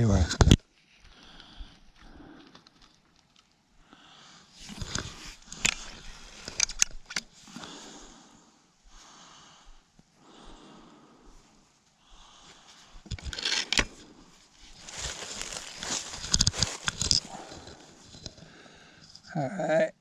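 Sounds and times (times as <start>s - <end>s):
rustling handling noise: 11.7s - 19.3s.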